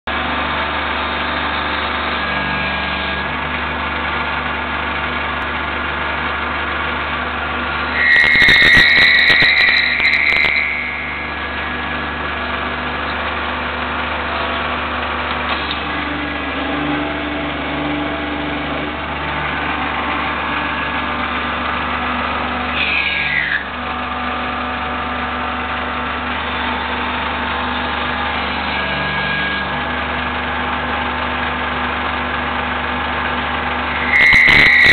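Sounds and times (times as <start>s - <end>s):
lathe mechanical hum: 0.1s - 34.9s
high-pitched squeal with rattling clicks: 0.3s - 3.6s, 7.6s - 24.6s, 25.6s - 30.3s, 33.7s - 34.9s
whine falling in pitch: 7.9s - 12.2s.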